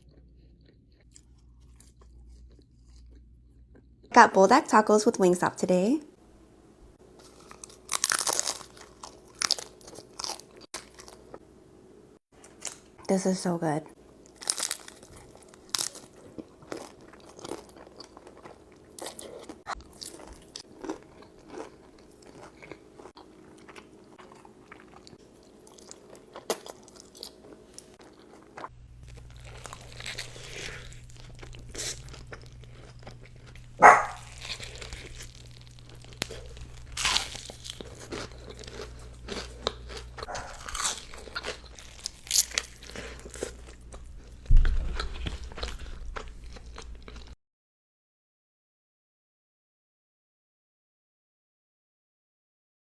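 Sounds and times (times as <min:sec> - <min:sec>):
crunchy bites and wet chewing: 0:00.0 - 0:04.1, 0:07.2 - 0:11.4, 0:14.2 - 0:47.4
steady low hum: 0:28.7 - 0:47.4.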